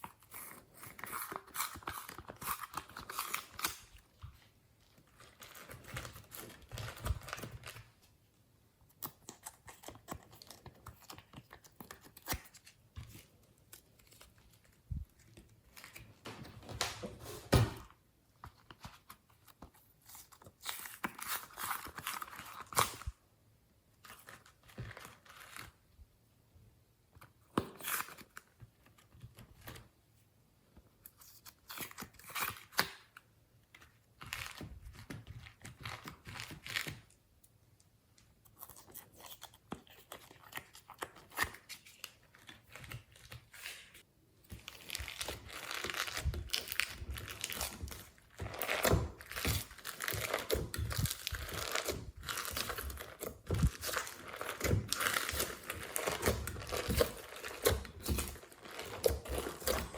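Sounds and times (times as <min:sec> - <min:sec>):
slime stretching and crackling: 0:44.5 - 0:59.9.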